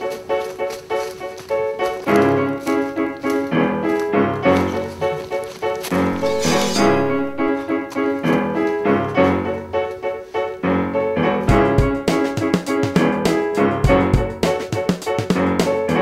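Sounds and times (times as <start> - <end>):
piano chords: 0.0 - 16.0
drum beat: 11.5 - 15.8.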